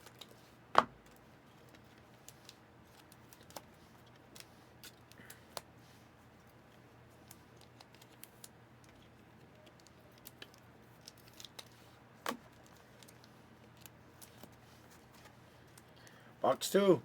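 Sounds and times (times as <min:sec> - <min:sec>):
trading cards clicking and rustling: 0:06.5 - 0:16.0.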